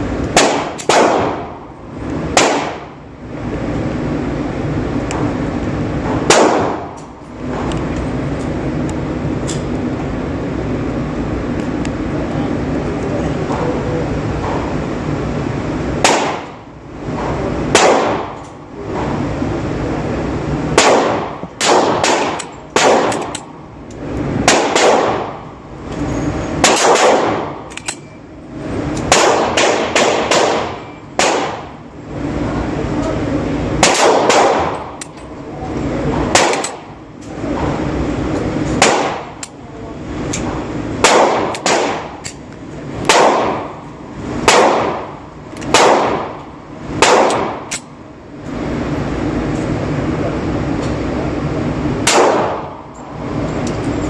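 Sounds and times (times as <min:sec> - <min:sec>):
pistol shots with echo: 0:00.3 - 0:01.6, 0:02.3 - 0:03.0, 0:06.2 - 0:07.0, 0:16.0 - 0:16.6, 0:17.7 - 0:18.4, 0:20.7 - 0:23.5, 0:24.4 - 0:25.5, 0:26.6 - 0:27.7, 0:29.1 - 0:31.8, 0:33.8 - 0:35.0, 0:36.3 - 0:37.0, 0:38.8 - 0:39.4, 0:41.0 - 0:42.2, 0:43.1 - 0:43.8, 0:44.4 - 0:46.4, 0:47.0 - 0:47.8, 0:52.0 - 0:52.8.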